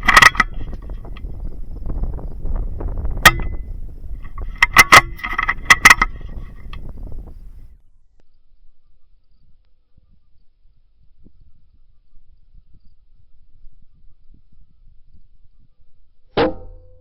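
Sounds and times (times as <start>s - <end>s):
sharp metallic clicks: 0.0s - 1.4s, 3.1s - 7.0s.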